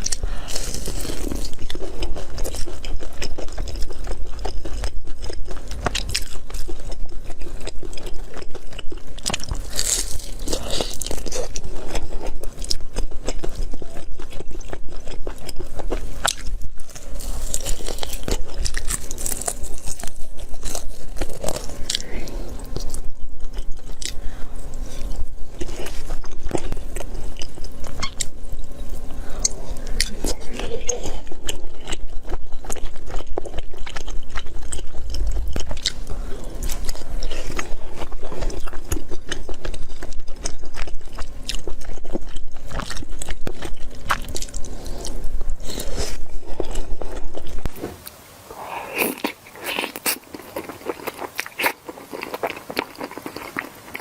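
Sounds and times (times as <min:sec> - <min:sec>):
chewing and crunching food: 0:00.0 - 0:54.0
wet mouth sounds: 0:33.6 - 0:54.0.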